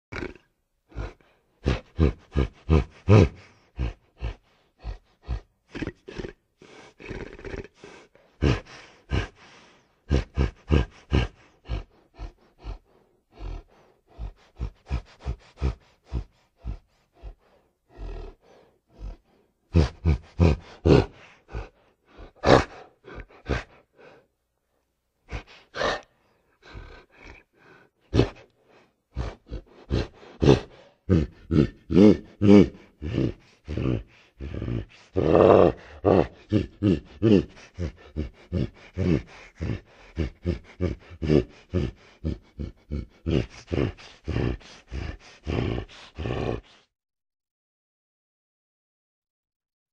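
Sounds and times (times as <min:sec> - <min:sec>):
man imitating gorilla grunts: 0:00.1 - 0:24.1, 0:25.3 - 0:28.5, 0:29.1 - 0:46.9.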